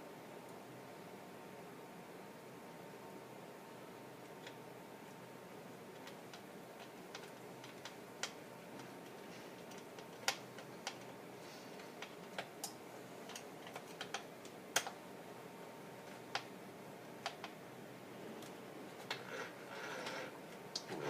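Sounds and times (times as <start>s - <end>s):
small parts clicking and tapping: 11.8s - 15.0s.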